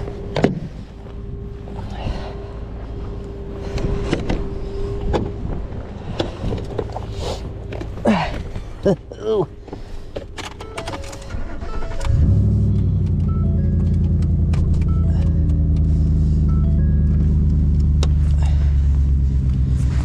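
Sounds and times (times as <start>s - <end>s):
truck engine revving: 11.3s - 20.0s.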